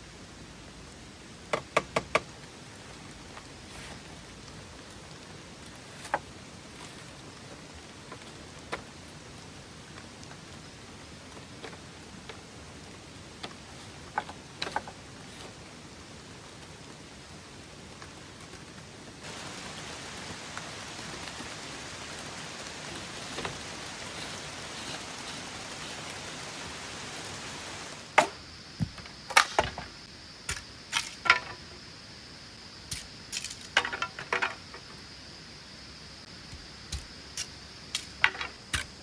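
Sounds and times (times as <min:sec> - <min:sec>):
rain hissing: 0:00.0 - 0:39.0.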